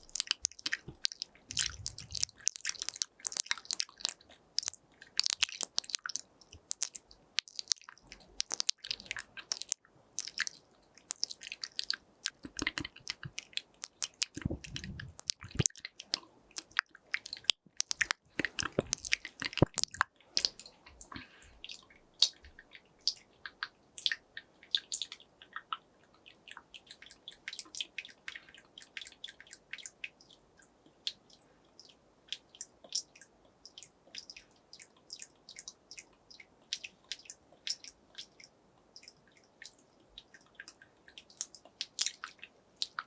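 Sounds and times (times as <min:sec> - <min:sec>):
wet tongue clicks and lip smacks: 0:00.0 - 0:43.0.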